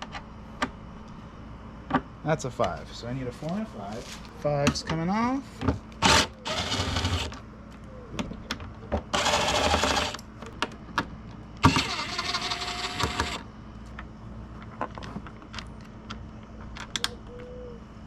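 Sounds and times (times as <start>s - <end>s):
power driver spinning bolts: 11.6s - 13.4s.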